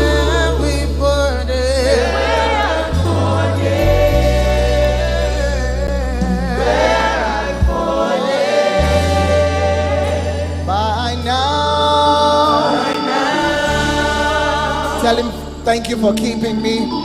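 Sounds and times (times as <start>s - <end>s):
gospel choir singing: 0.0s - 17.0s
sustained low bass notes: 0.0s - 17.0s.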